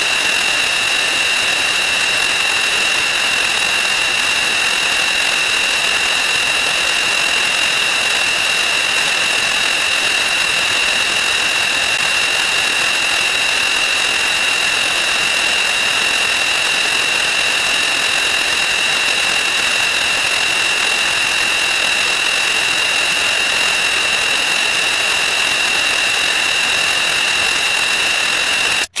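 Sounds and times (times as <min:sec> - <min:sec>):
high steady whistle-like tone: 0:19.0 - 0:29.0.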